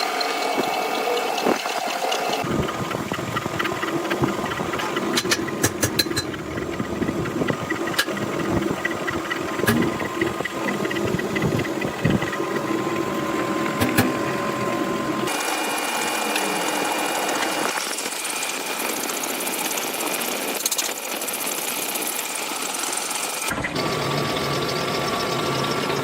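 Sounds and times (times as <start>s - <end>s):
metal lathe cutting thread: 0.0s - 26.0s
machine hum: 2.1s - 26.0s
scattered clicks: 2.4s - 14.1s.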